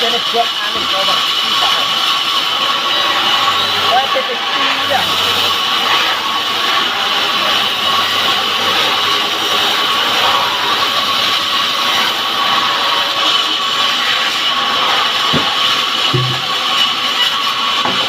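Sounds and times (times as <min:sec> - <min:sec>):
chainsaw cutting wood: 0:15.0 - 0:18.0.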